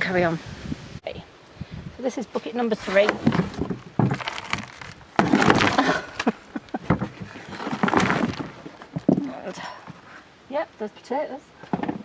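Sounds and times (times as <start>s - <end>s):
soil and dry stems rustling: 2.4s - 10.3s.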